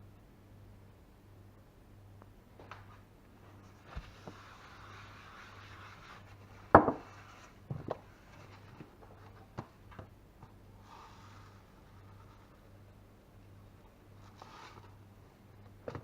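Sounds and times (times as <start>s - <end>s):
steady low hum: 0.0s - 16.0s
objects knocking on hard surface: 6.8s - 7.1s.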